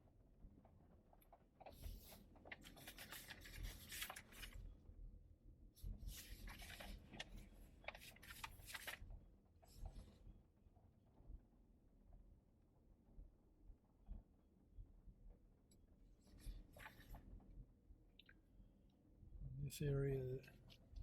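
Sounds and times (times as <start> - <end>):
scratchy rustling and crackling: 1.8 - 4.6, 6.0 - 9.0.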